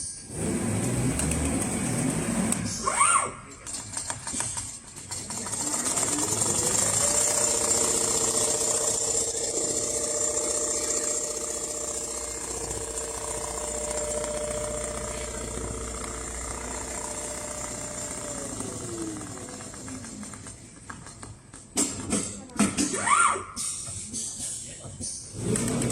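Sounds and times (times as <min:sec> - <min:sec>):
sewing machine motor whine: 0:05.2 - 0:20.6.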